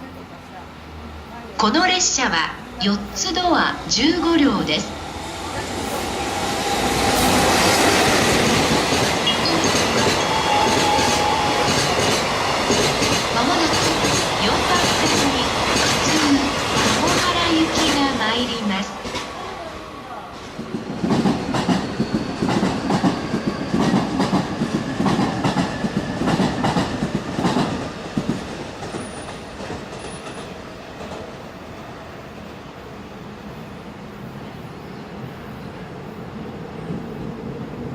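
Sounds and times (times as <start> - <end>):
train wheels on rails: 2.8 - 32.6.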